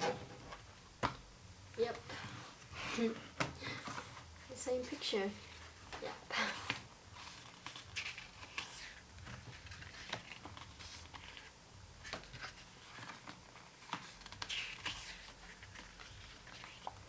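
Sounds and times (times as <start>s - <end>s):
pages turning: 5.4s - 17.0s.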